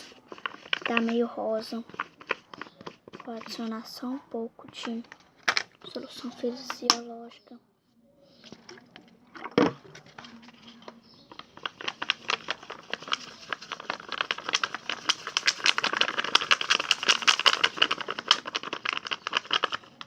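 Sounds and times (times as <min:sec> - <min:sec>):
spoon stirring in plastic pot: 0:00.0 - 0:04.0.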